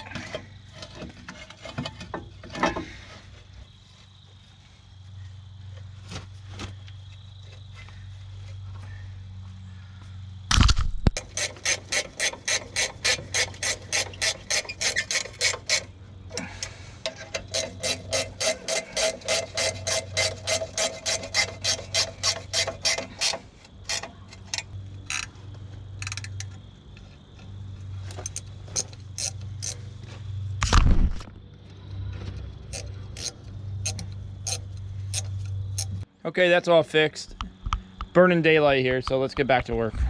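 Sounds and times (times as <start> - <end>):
ratchet clicking: 11.2 - 25.3, 26.0 - 26.6, 28.2 - 29.8, 32.7 - 36.0.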